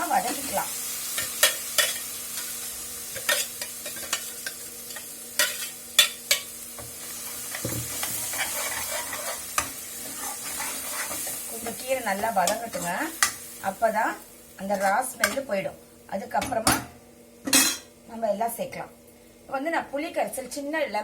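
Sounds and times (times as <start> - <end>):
food sizzling in a pan: 0.0 - 21.0
spoon scraping a pan: 0.2 - 13.5, 14.7 - 15.5.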